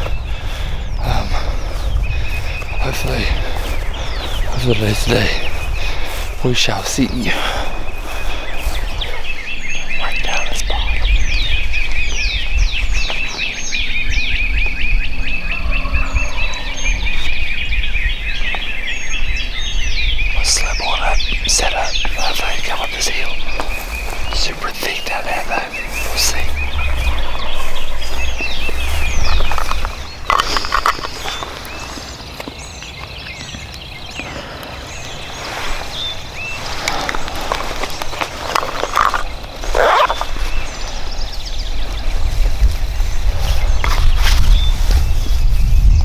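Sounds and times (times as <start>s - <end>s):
footsteps crunching dry leaves: 0.0s - 10.6s, 21.6s - 45.8s
songbirds chirping: 0.0s - 46.0s
low rumble: 25.8s - 31.9s.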